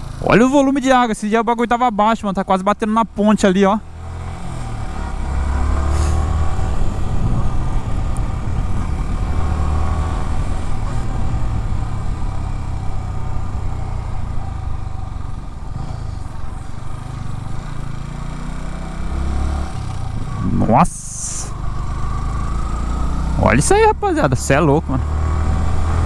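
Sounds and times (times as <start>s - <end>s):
motorcycle engine cruising: 0.0s - 26.0s
wind rush on microphone: 6.5s - 9.4s.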